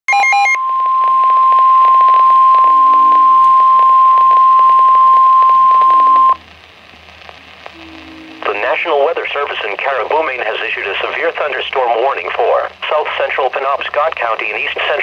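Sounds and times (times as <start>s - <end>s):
steady high alarm tone: 0.1s - 6.4s, 7.7s - 9.1s.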